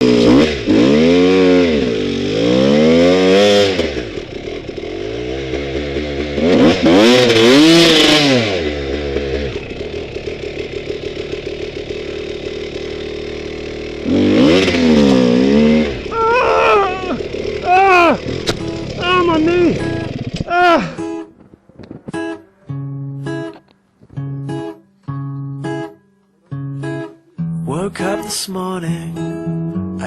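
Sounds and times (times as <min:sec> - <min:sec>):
motorcycle engine revving: 0:00.0 - 0:22.2.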